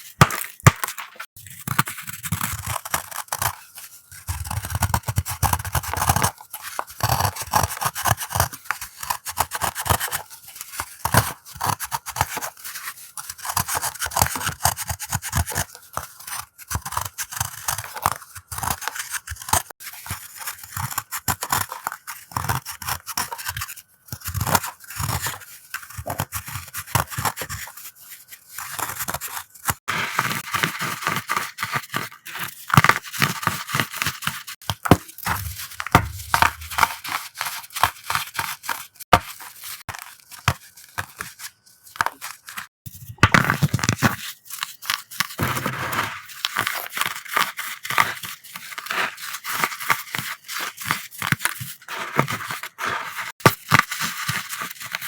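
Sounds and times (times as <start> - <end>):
chalk being crushed: 0.0 - 4.7.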